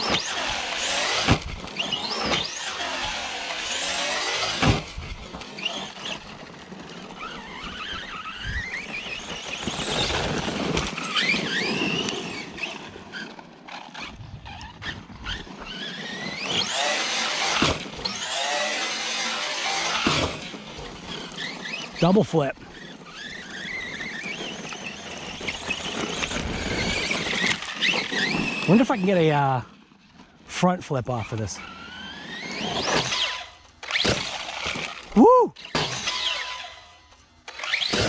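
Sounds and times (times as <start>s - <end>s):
electric motor whining: 0.0s - 29.9s, 31.6s - 38.0s
tyres on gravel: 0.0s - 38.0s.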